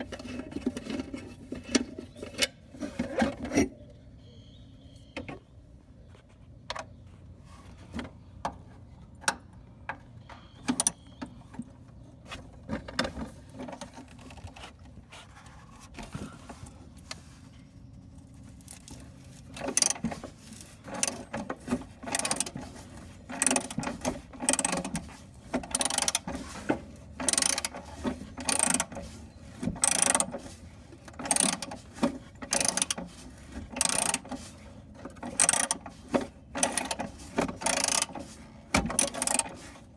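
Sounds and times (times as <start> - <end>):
ratchet wrench clicking: 19.7 - 20.0, 22.1 - 22.6, 23.3 - 23.8, 24.4 - 25.0, 25.7 - 26.3, 27.2 - 27.7, 28.4 - 28.9, 29.8 - 30.3, 31.2 - 31.7, 32.5 - 33.0, 33.8 - 34.2, 35.4 - 35.8, 36.6 - 37.0, 37.6 - 38.1, 39.0 - 39.5.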